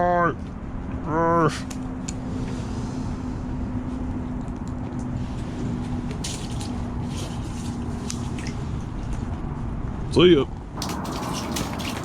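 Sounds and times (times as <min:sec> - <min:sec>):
short crackling sounds: 0:10.8 - 0:12.0.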